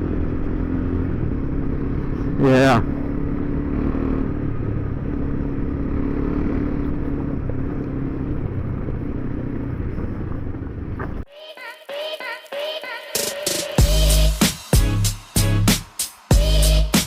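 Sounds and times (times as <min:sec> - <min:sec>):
motorcycle engine running: 0:00.0 - 0:11.3
wind and tyre noise: 0:00.0 - 0:11.3
music: 0:11.3 - 0:17.0.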